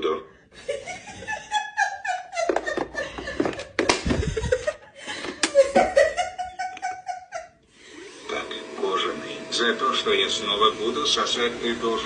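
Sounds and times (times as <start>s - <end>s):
person laughing: 0.6s - 7.6s.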